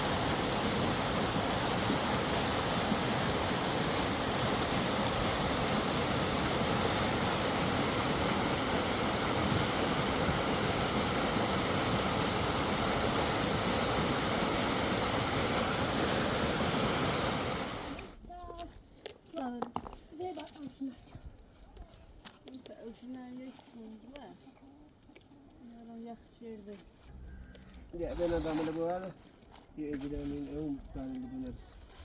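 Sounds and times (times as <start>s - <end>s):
river water rushing: 0.0s - 18.1s.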